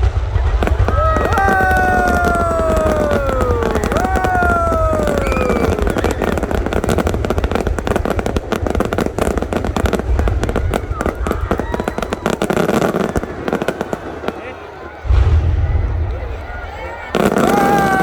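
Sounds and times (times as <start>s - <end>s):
fireworks cracks and bangs: 0.0s - 18.0s
falling whistle tone: 0.9s - 6.4s.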